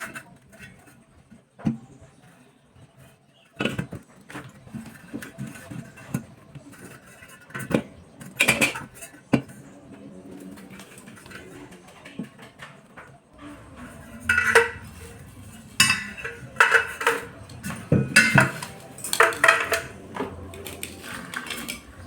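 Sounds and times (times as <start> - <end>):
metallic clanks and knocks: 10.5 - 22.0.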